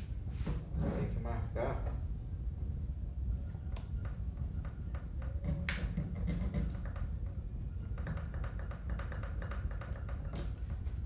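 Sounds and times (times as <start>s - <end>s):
low steady rumble: 0.0s - 11.0s
clicks and taps of fan parts: 5.0s - 7.4s.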